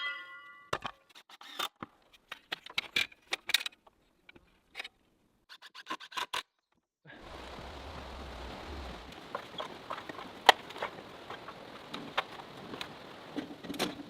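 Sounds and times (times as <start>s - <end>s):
steady hiss: 7.1s - 14.0s
low hum: 7.2s - 12.6s.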